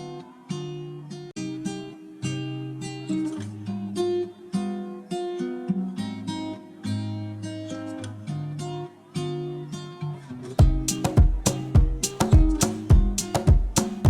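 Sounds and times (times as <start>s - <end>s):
acoustic guitar chords: 0.0s - 14.0s
heavy low beat thumps: 10.6s - 14.0s.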